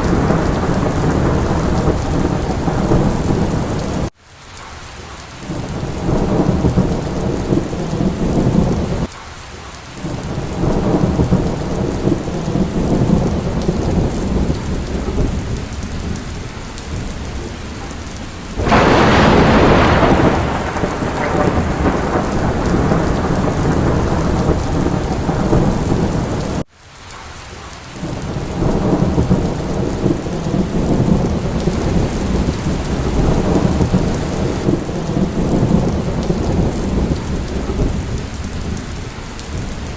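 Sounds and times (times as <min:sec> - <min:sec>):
loud thunderclap: 0:00.0 - 0:04.1, 0:10.0 - 0:16.2, 0:16.9 - 0:26.6, 0:28.1 - 0:38.8
low rolling thunder: 0:00.0 - 0:04.1, 0:05.5 - 0:09.1, 0:10.0 - 0:26.7, 0:28.0 - 0:39.9
steady rain: 0:00.0 - 0:39.9.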